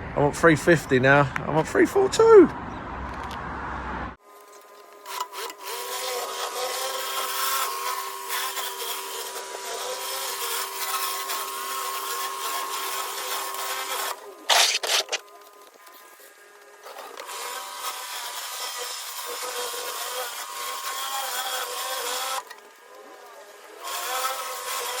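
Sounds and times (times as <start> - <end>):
pressure washer spraying: 14.5 - 15.2.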